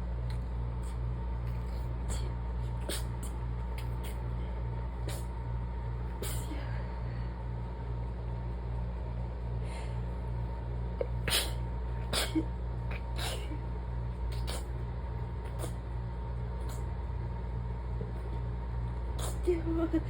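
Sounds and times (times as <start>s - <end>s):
steady low hum: 0.0s - 20.0s
stifled sneezes: 0.8s - 4.3s, 5.0s - 5.4s, 6.1s - 6.7s, 11.0s - 13.6s, 14.3s - 14.8s, 15.4s - 15.8s, 19.2s - 19.5s.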